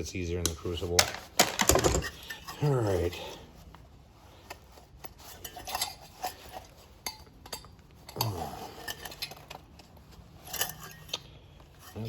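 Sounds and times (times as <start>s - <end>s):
metal parts clinking and clicking: 1.0s - 2.3s.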